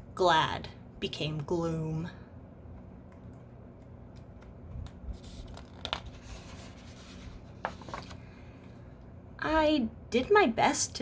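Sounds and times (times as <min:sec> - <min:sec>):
book pages rustling: 0:04.2 - 0:08.4.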